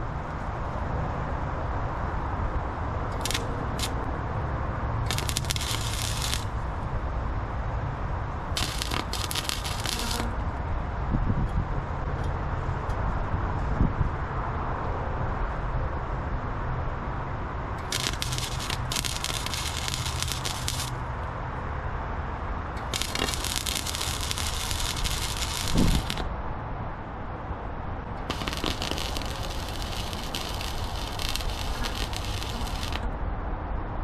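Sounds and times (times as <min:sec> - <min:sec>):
arc welding crackling: 0:03.1 - 0:04.1, 0:05.1 - 0:06.9, 0:08.4 - 0:10.4, 0:17.8 - 0:21.1, 0:22.8 - 0:26.3, 0:28.2 - 0:33.1
low background rumble: 0:22.6 - 0:33.2.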